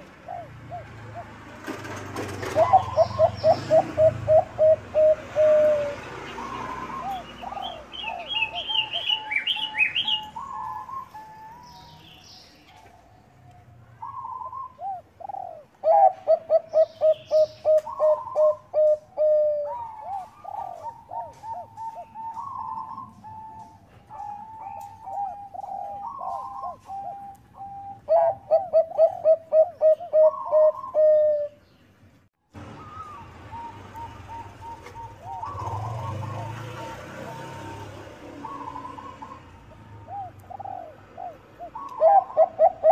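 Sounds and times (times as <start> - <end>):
dove cooing: 0.0 - 31.6, 32.6 - 42.9
higher bird chirps: 2.6 - 13.2, 13.9 - 32.0.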